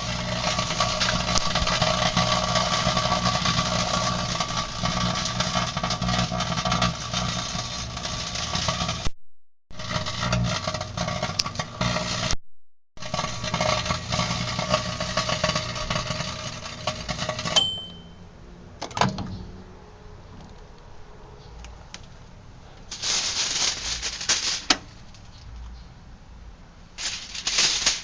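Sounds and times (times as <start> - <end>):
microwave beep: 17.6 - 18.3
rustling: 21.4 - 25.9, 27.0 - 28.0.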